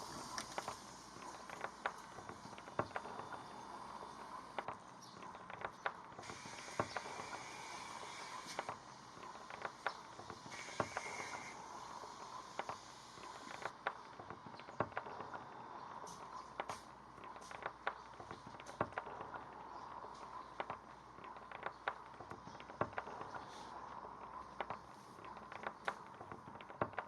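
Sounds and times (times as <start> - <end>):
faint hiss: 0.0 - 4.8, 6.1 - 20.8
sharp clicks and crackles: 0.0 - 27.0.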